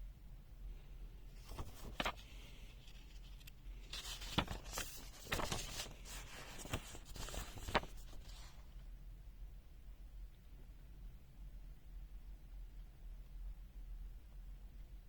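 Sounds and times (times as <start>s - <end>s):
handling rustling: 1.3s - 8.6s.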